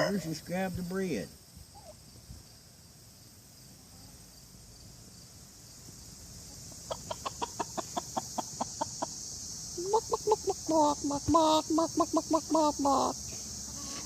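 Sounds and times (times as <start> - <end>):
chickens clucking: 1.6 - 2.2, 6.4 - 14.0.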